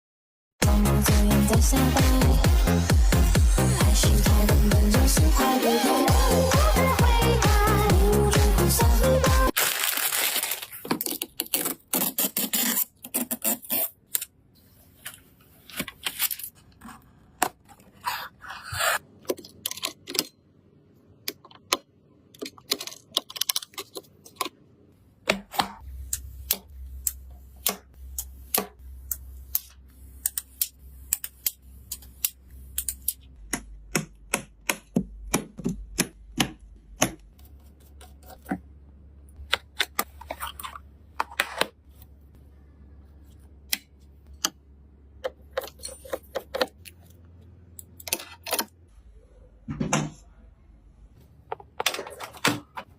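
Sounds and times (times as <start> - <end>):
computer parts clicking and tapping: 21.2 - 24.6, 25.2 - 38.6.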